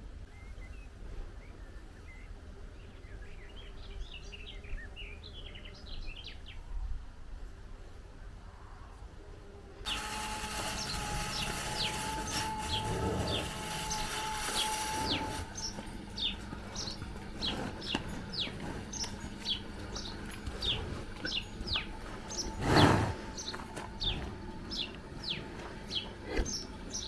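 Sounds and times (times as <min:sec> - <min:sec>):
songbirds chirping: 0:00.0 - 0:27.0
loud short noise: 0:09.9 - 0:15.8.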